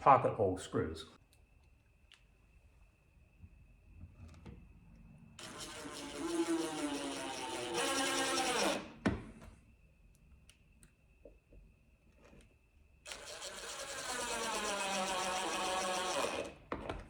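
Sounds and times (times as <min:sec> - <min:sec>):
power drill driving screws: 0:05.4 - 0:09.0, 0:13.1 - 0:16.6.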